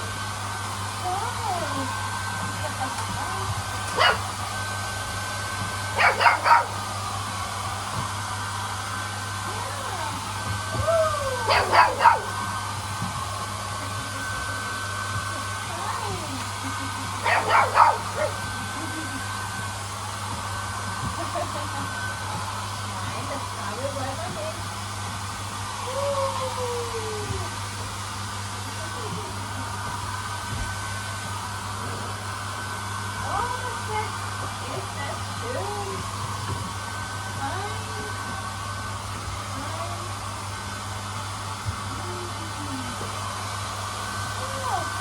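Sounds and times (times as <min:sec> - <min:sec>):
hair dryer blowing: 0:00.0 - 0:45.0
puppies yapping: 0:06.0 - 0:06.7.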